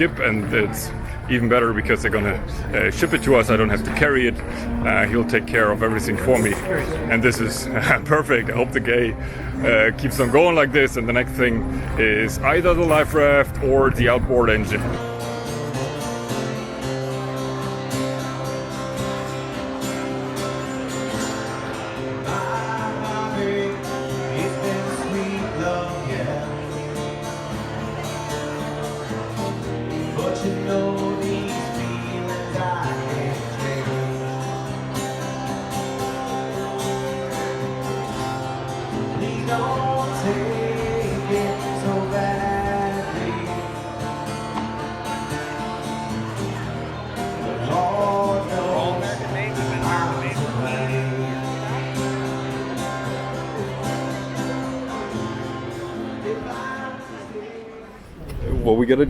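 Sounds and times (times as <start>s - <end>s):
acoustic guitar: 0.0s - 59.0s
person singing: 39.0s - 44.2s.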